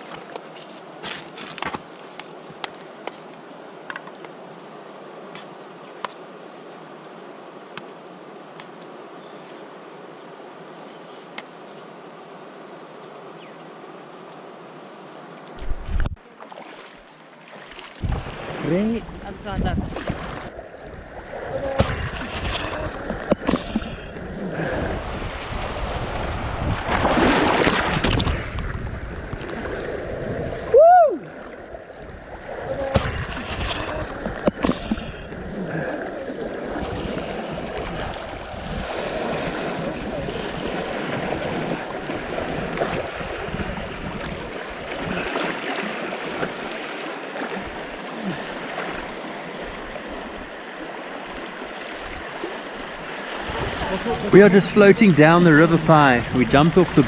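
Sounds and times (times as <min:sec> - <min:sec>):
river water rushing and splashing: 0:11.6 - 0:57.0.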